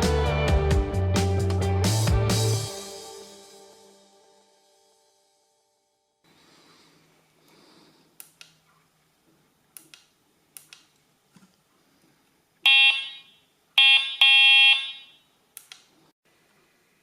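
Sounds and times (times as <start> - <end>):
switch clicks: 9.8 - 11.0, 15.6 - 15.9
electronic toy car horn: 12.7 - 15.3.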